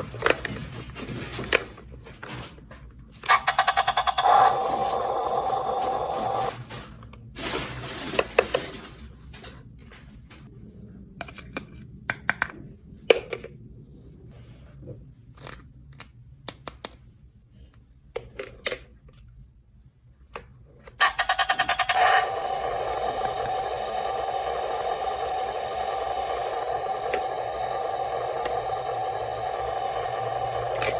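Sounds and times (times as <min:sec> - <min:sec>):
plastic pieces clicking and tapping: 0:15.4 - 0:17.0.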